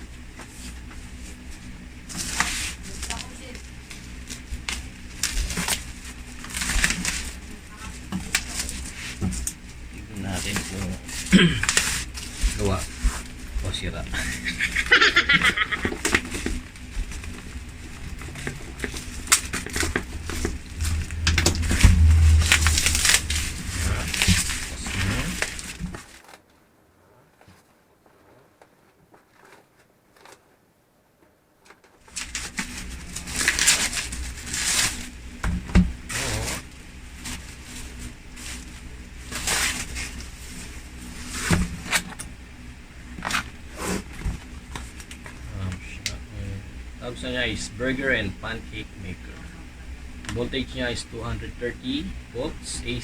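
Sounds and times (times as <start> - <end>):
low background hum: 0.0 - 53.0
packaging rustling and crinkling: 2.1 - 26.6, 27.4 - 30.6, 31.6 - 42.2.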